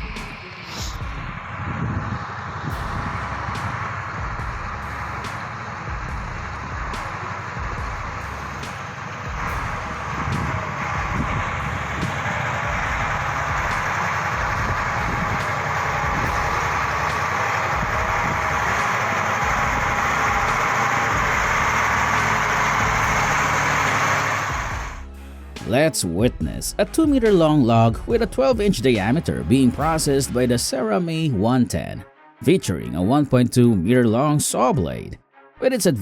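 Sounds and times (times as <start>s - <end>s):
heavy truck engine running: 0.0s - 25.8s.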